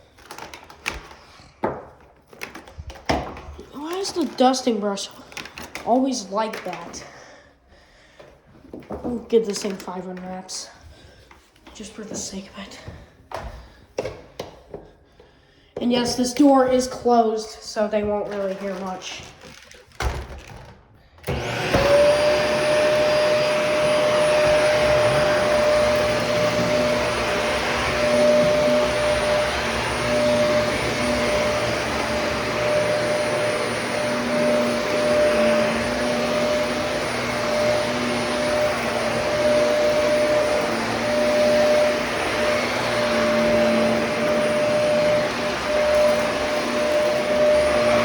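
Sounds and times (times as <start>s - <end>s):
vacuum cleaner running: 2.4s - 7.1s, 15.8s - 19.6s, 21.2s - 48.0s.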